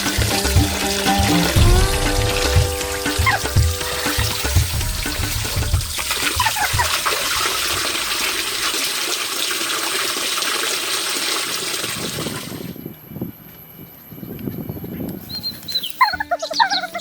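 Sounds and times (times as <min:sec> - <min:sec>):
water rushing and splashing: 0:00.0 - 0:12.1.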